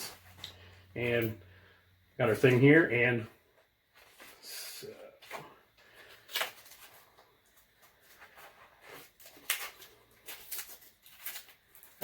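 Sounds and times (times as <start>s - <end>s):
packaging rustling: 6.0s - 12.0s
sharp crackles of packaging: 6.2s - 7.0s, 8.9s - 12.0s.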